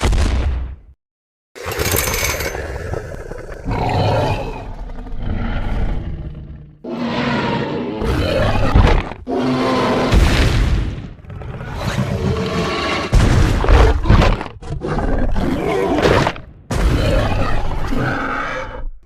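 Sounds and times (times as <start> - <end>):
dinosaur roars: 2.5 - 10.2, 11.2 - 13.1, 14.0 - 19.0.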